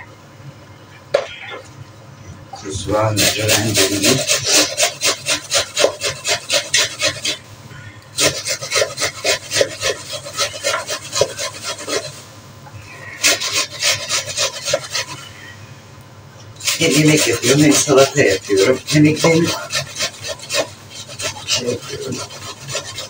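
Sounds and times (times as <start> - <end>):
onions rasping on grater: 2.7 - 7.4, 8.1 - 12.3, 13.0 - 15.4, 16.6 - 23.0.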